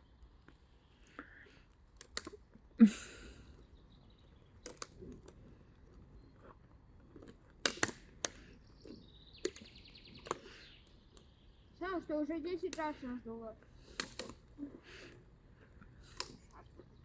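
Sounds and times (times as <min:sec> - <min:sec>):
dry twigs snapping: 0:01.7 - 0:02.5, 0:04.6 - 0:05.4, 0:07.1 - 0:11.3, 0:12.7 - 0:13.1, 0:13.8 - 0:15.3, 0:16.0 - 0:16.7.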